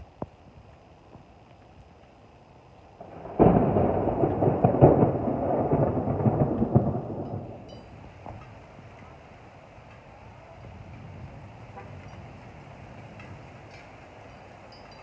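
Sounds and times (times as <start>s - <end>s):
thunderclap: 3.0s - 8.9s.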